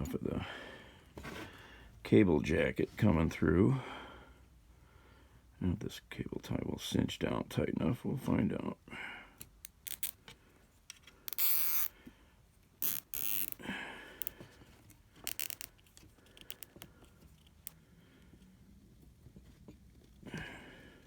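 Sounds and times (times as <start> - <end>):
small handling clicks: 9.4 - 11.9, 12.8 - 13.6, 14.2 - 17.8
cable tie ratchet zipping: 9.6 - 10.2, 11.3 - 12.0, 12.8 - 13.6, 15.2 - 16.8.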